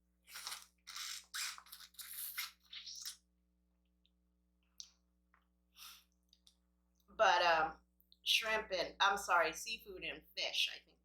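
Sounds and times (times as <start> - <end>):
crackly eating sounds: 0.3 - 3.2.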